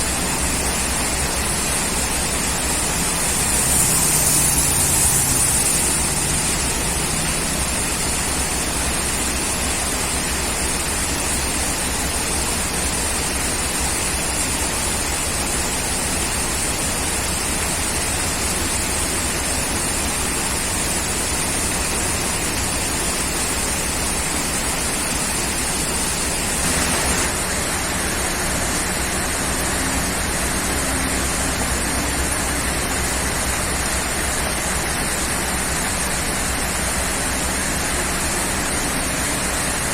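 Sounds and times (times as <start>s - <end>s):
heavy rain falling: 15.4s - 39.7s.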